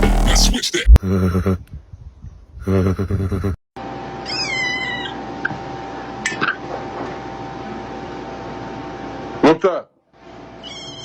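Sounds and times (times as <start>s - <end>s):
electronic music: 0.0s - 1.0s
kitten crying: 4.2s - 5.2s, 10.6s - 11.0s.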